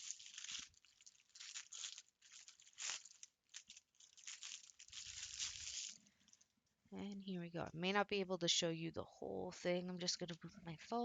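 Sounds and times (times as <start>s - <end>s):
packaging crinkling: 0.0s - 6.5s.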